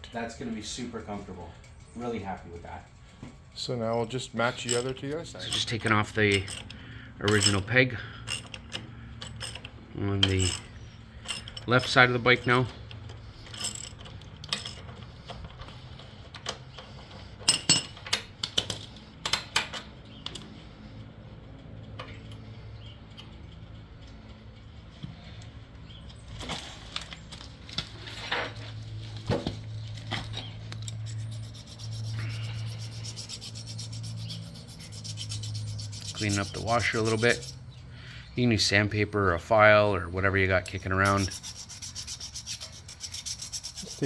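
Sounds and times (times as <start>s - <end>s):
metal tools clinking: 3.6s - 20.7s, 26.4s - 37.6s
filing metal washer: 4.4s - 12.6s, 30.7s - 37.7s, 40.8s - 44.0s.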